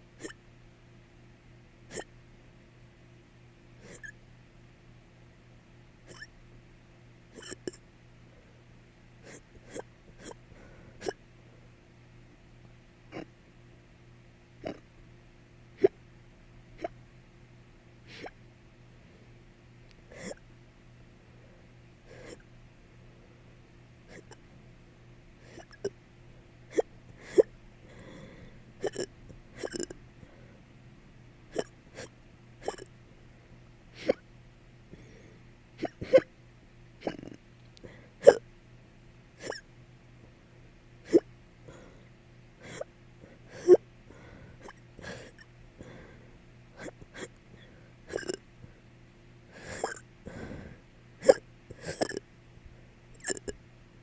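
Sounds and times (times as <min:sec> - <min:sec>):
person hiccuping: 0:01.9 - 0:02.1, 0:03.8 - 0:04.2, 0:06.1 - 0:06.3, 0:07.4 - 0:07.8, 0:09.2 - 0:10.4, 0:11.0 - 0:11.2, 0:13.1 - 0:13.3, 0:14.6 - 0:14.8, 0:20.1 - 0:20.4, 0:24.1 - 0:24.4, 0:25.5 - 0:25.9, 0:26.7 - 0:27.5, 0:28.8 - 0:30.0, 0:31.5 - 0:32.9, 0:34.0 - 0:34.2, 0:35.8 - 0:36.3, 0:37.0 - 0:37.4, 0:38.2 - 0:38.4, 0:39.4 - 0:39.6, 0:41.1 - 0:41.3, 0:43.6 - 0:43.8, 0:46.8 - 0:47.3, 0:48.1 - 0:48.4, 0:49.6 - 0:50.1, 0:51.2 - 0:52.2, 0:53.2 - 0:53.6
breathing: 0:08.2 - 0:09.8, 0:10.5 - 0:11.8, 0:21.2 - 0:22.4, 0:25.4 - 0:28.7, 0:30.2 - 0:30.7, 0:34.9 - 0:35.5, 0:37.8 - 0:38.2, 0:41.6 - 0:48.9, 0:49.5 - 0:50.9.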